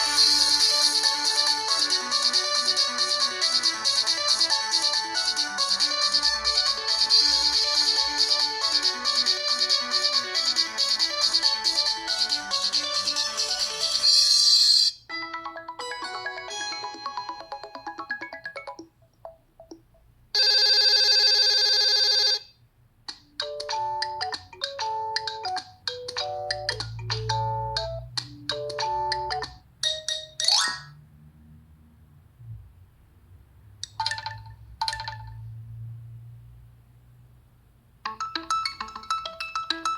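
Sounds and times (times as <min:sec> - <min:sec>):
phone ringtone electronic melody: 0:00.0 - 0:19.8, 0:20.4 - 0:22.5, 0:23.3 - 0:31.0, 0:34.0 - 0:35.4, 0:38.1 - 0:39.9.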